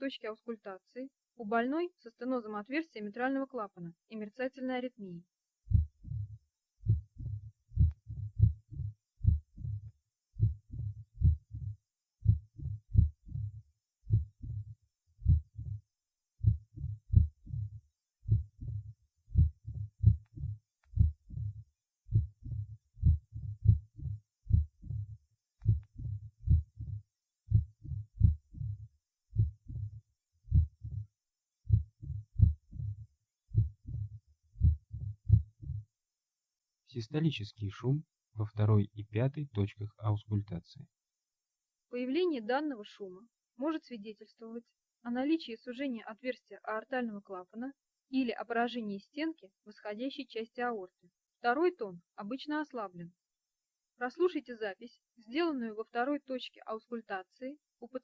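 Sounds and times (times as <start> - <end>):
irregular heartbeats: 5.6 - 35.9
diastolic heart murmur: 5.7 - 31.1, 31.7 - 35.9.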